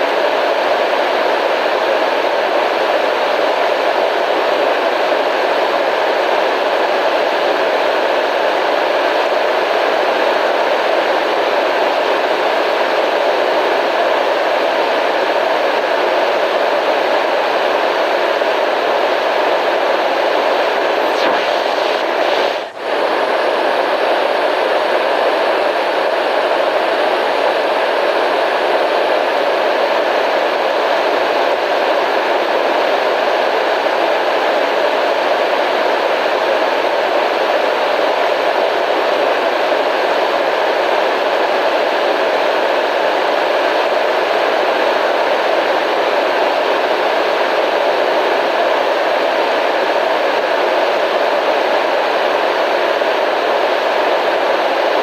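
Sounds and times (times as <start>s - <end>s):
white noise hiss: 19.6s - 29.5s.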